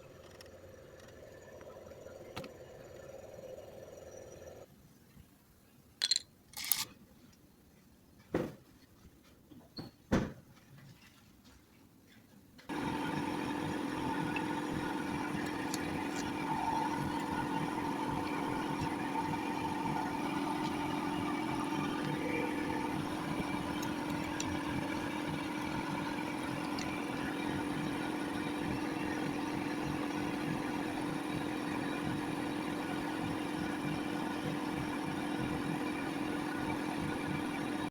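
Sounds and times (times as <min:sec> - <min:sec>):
steady tones: 0:12.7 - 0:37.8
car engine running: 0:12.7 - 0:37.9.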